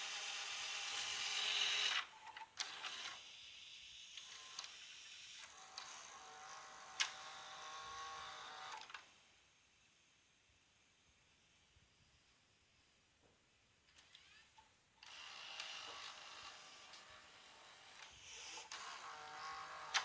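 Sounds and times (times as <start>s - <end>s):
tape mechanism motor whir: 0.0s - 9.1s, 13.9s - 20.0s.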